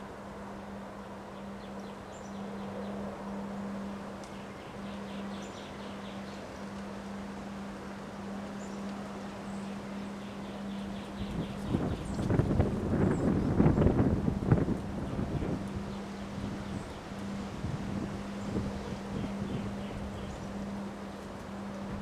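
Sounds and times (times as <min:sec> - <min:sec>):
constant low hum: 0:00.0 - 0:22.0
wind gust buffeting microphone: 0:11.1 - 0:20.8.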